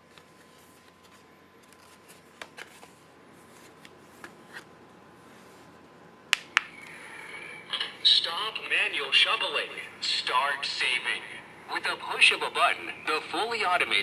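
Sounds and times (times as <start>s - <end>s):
paper card rustling: 0.0s - 4.6s
low steady hum: 0.0s - 14.0s.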